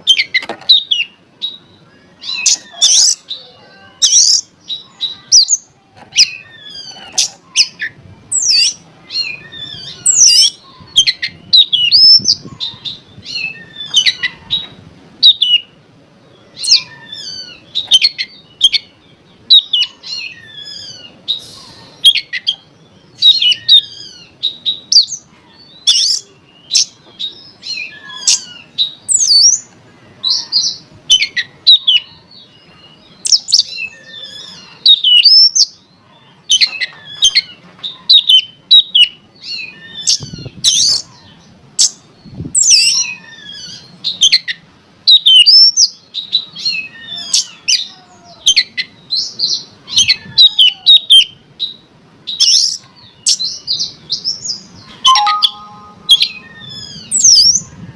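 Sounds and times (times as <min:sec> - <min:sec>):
magpie-robin singing whistles and chirps: 0:42.6 - 0:47.9, 0:48.5 - 0:57.7.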